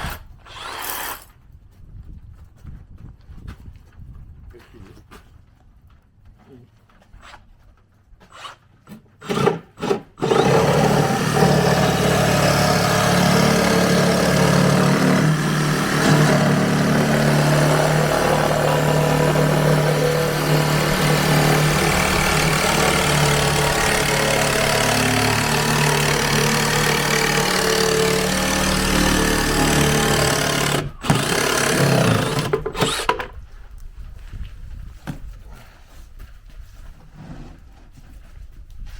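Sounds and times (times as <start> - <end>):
reciprocating saw cutting plywood: 0.0 - 1.3, 9.2 - 33.3.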